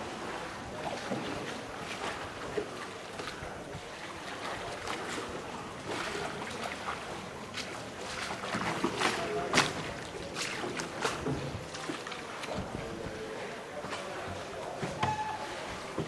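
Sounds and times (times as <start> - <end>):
water splashing around a rowed boat: 0.0 - 16.0.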